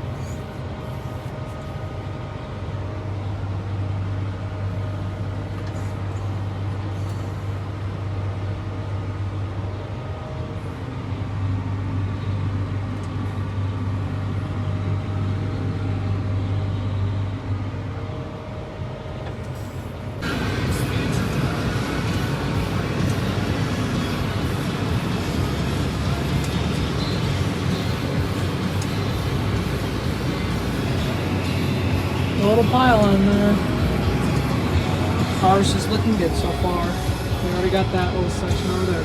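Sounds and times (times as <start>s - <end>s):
harvest machinery engine drone: 0.0s - 39.0s
steady machine tones: 19.3s - 39.0s.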